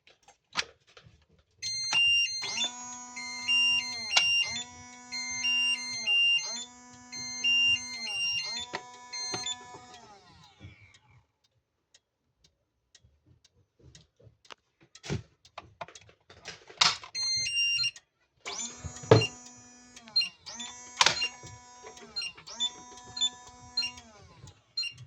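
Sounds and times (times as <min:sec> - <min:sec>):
high beeps: 0:01.6 - 0:09.8, 0:17.2 - 0:17.9, 0:18.6 - 0:19.4, 0:20.0 - 0:24.0
fire alarm buzzing: 0:01.6 - 0:10.6, 0:17.2 - 0:25.0
scattered clicks: 0:01.6 - 0:11.0, 0:15.5 - 0:25.0.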